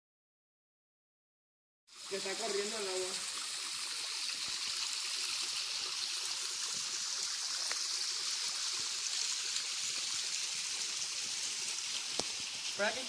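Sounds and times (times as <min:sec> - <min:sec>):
running water: 0:01.9 - 0:13.0.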